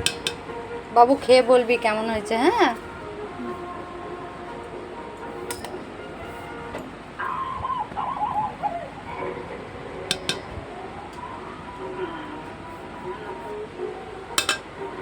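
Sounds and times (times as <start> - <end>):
dishes clinking: 0.0 - 0.5, 5.4 - 5.9, 10.1 - 10.6, 14.3 - 14.8
bird calling: 7.1 - 13.4.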